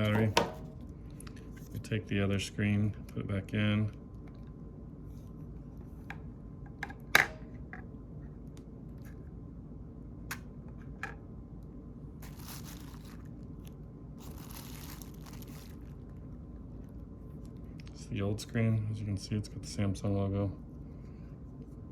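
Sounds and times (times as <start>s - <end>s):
rustling and scraping: 12.2s - 17.6s.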